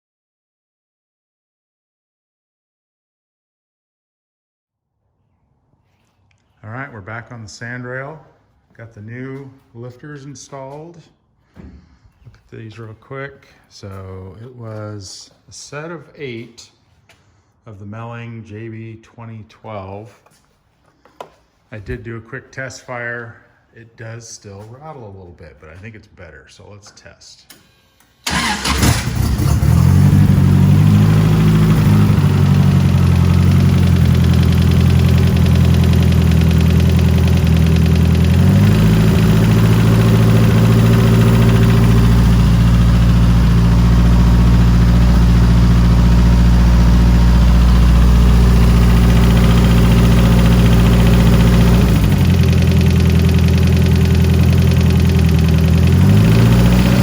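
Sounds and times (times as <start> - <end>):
engine starting and idling: 28.2 - 57.0.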